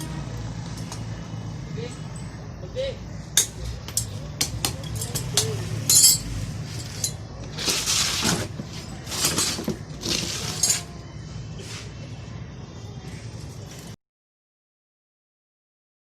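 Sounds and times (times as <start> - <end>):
hard objects clinking: 3.4 - 11.0.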